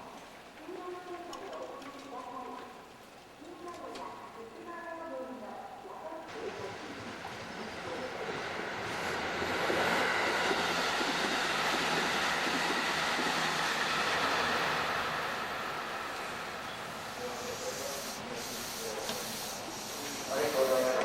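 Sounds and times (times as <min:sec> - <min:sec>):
electric train passing: 0:06.3 - 0:21.0.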